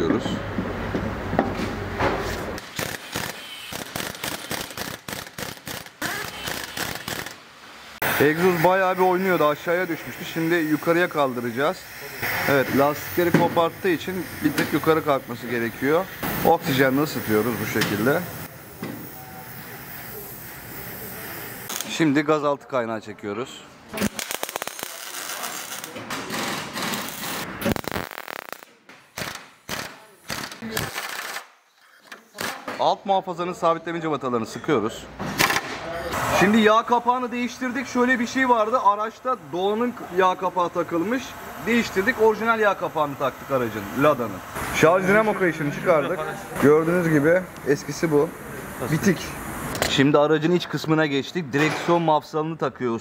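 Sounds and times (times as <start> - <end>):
pneumatic impact wrench rattling: 2.6 - 7.4, 24.0 - 31.5
welder arc crackling: 2.6 - 7.4, 20.1 - 22.0, 24.0 - 31.5.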